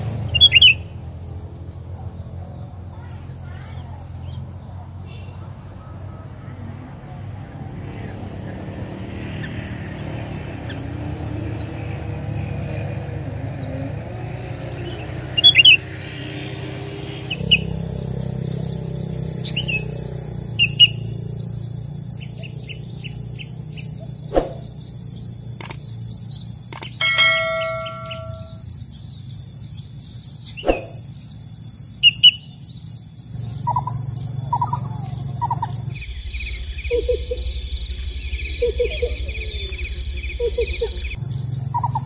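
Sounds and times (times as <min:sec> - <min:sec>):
bird sharp chirps: 0:00.0 - 0:01.0, 0:17.3 - 0:29.2, 0:30.2 - 0:31.4, 0:32.0 - 0:42.0
high insect buzz: 0:13.2 - 0:38.5.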